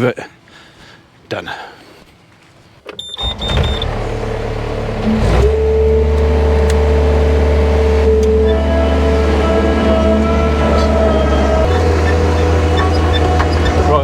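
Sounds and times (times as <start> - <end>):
diesel engine starting and running: 3.0 - 14.0
high warning beeps: 5.2 - 14.0.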